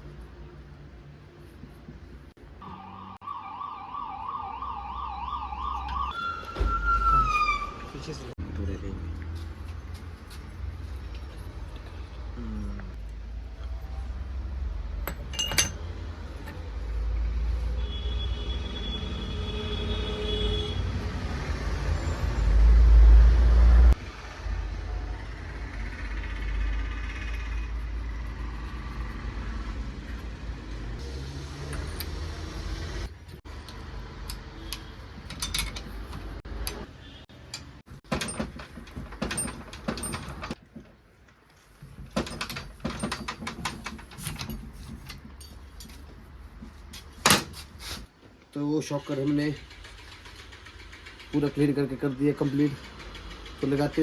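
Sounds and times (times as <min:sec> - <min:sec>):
sharp metallic clicks and knocks: 0:33.2 - 0:47.6, 0:49.0 - 0:54.0.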